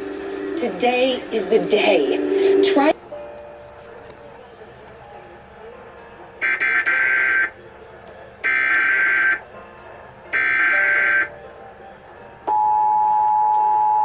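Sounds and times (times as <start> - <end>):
two-tone attention signal: 12.5 - 14.0.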